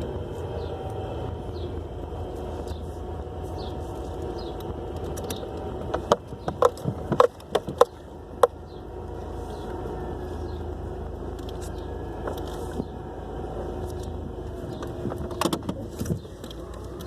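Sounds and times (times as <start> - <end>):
car engine droning and growling: 0.0 - 17.0
sharp clicks and knocks: 4.6 - 8.6, 14.8 - 17.0.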